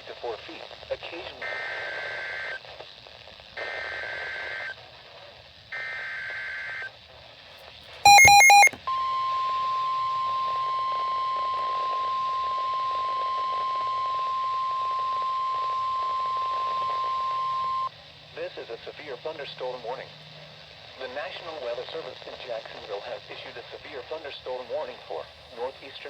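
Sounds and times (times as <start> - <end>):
loud pulsing beep: 8.1 - 8.8
steady warning alarm tone: 8.1 - 8.8.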